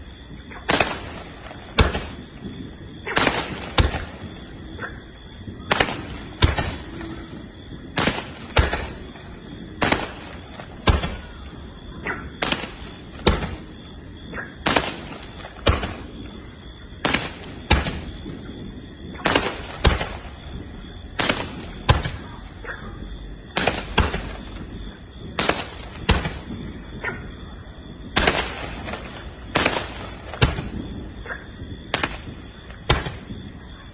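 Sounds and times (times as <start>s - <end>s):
firework bangs: 0.0s - 33.9s.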